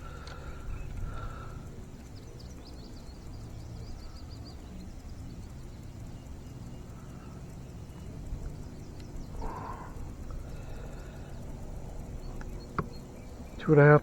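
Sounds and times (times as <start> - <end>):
bird chirping trill: 0.0 - 14.0.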